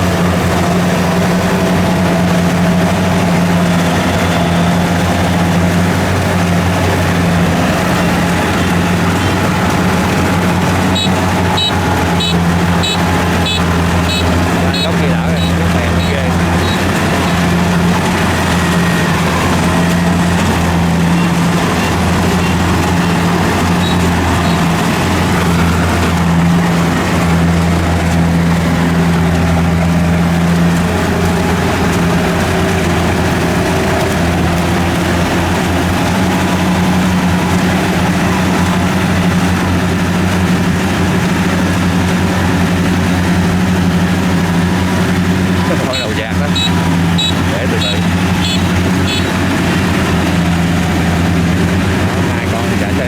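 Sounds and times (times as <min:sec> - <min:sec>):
combine harvester diesel engine: 0:00.0 - 0:53.0.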